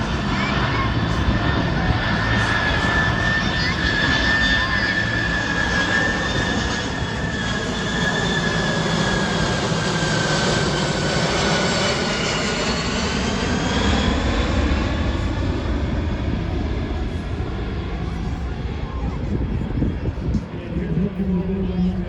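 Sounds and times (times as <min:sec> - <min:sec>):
jet engines roaring and whining: 0:00.0 - 0:22.0.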